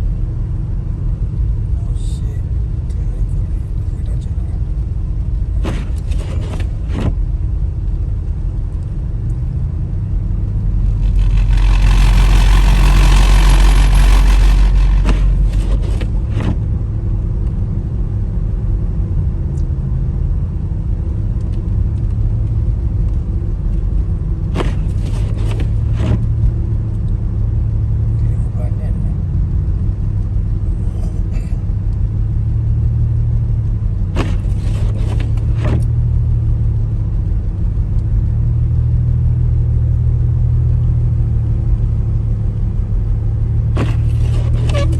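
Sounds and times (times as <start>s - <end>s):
car engine and road rumble: 0.0s - 44.9s
rushing air: 10.8s - 16.3s.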